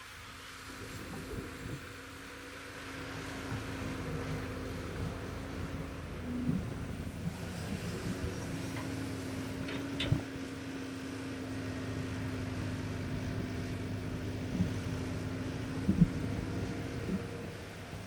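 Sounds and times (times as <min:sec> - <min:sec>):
excavator engine drone: 0:00.0 - 0:18.0
excavator clanking: 0:08.1 - 0:10.2.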